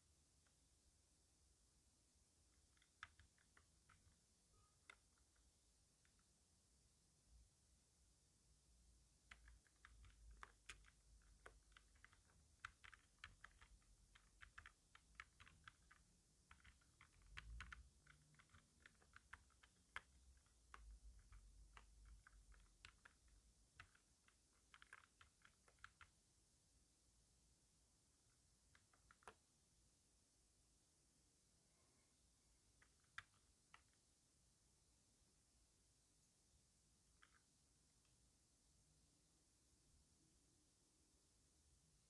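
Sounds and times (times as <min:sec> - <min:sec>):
typing on computer keyboard: 0:02.5 - 0:06.3, 0:09.2 - 0:26.2, 0:28.6 - 0:29.4, 0:32.8 - 0:34.0, 0:37.1 - 0:37.5.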